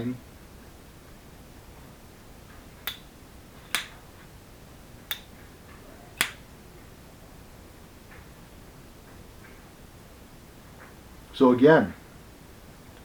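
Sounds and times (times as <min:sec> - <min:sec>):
switchblade clicking: 0:02.8 - 0:03.1, 0:03.7 - 0:04.0, 0:05.1 - 0:05.3, 0:06.2 - 0:06.4.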